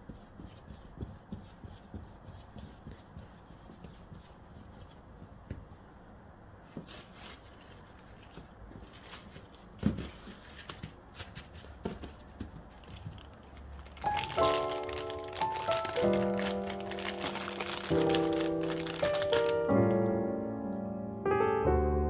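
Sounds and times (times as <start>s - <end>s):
hands rubbing bread dough: 0.0s - 19.7s.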